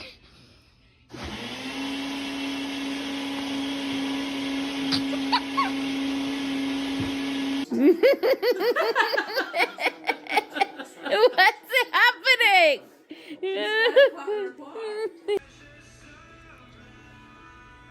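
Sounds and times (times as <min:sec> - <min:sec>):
appliance motor humming: 0:01.1 - 0:07.7
bouncy laughter-like voices: 0:04.8 - 0:05.9, 0:07.7 - 0:12.0.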